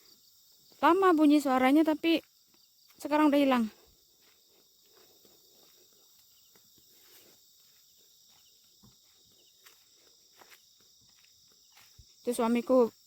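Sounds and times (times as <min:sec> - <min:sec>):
crickets and insects trilling: 0:00.0 - 0:13.0.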